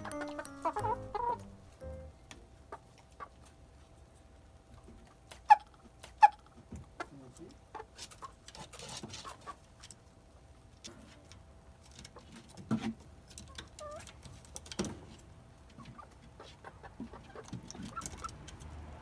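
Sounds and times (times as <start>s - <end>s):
rising chirp: 0.0s - 2.2s
chickens scratching and pecking: 2.7s - 19.0s.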